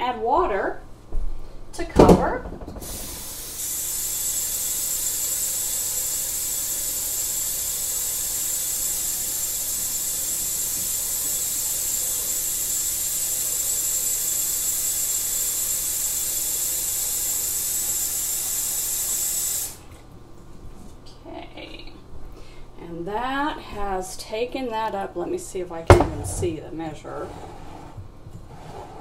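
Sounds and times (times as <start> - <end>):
water running into a pot: 2.8 - 19.8.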